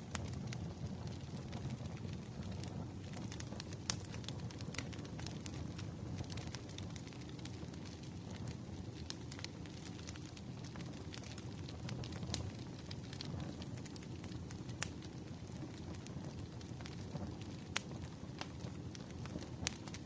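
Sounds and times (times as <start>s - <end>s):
fire crackles and pops: 0.0s - 20.0s
wood fire rumbling: 0.0s - 20.0s.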